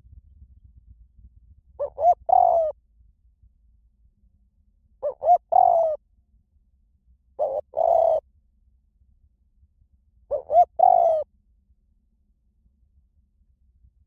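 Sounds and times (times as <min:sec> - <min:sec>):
dove cooing: 0:01.8 - 0:02.8, 0:05.0 - 0:06.0, 0:07.4 - 0:08.2, 0:10.3 - 0:11.3.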